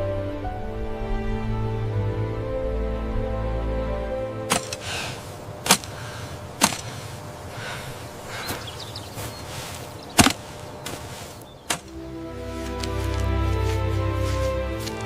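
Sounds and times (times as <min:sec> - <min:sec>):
sharp cracks: 0:04.5 - 0:08.5, 0:09.6 - 0:12.0.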